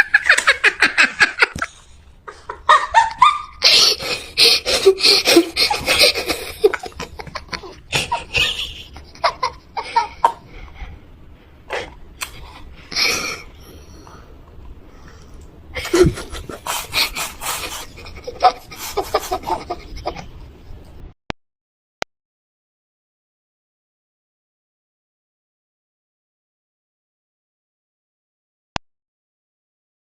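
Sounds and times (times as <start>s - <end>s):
young children laughing: 0.0s - 10.8s, 15.7s - 20.9s.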